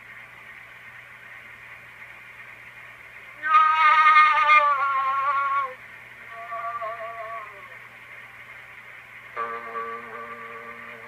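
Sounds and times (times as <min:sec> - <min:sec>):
phonograph surface hiss and hum: 0:00.0 - 0:11.0
recorded singing voice: 0:04.4 - 0:07.8.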